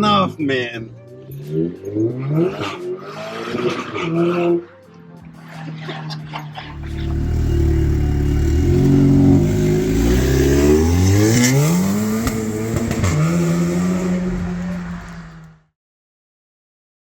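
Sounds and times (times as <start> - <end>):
car engine revving and idling: 6.2 - 15.7.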